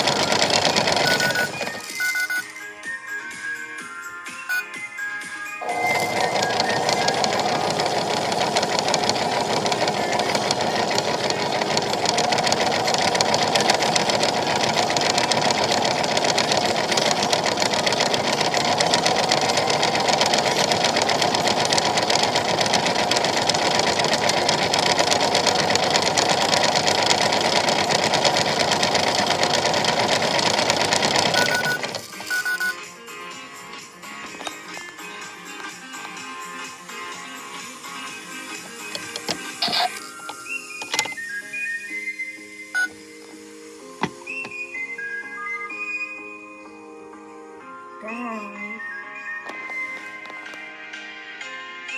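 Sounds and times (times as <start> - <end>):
small motor whirring: 0.0 - 2.6, 5.6 - 32.7, 39.0 - 41.0
short beeps: 1.0 - 2.6, 4.5 - 4.7, 31.4 - 32.8, 42.8 - 43.0.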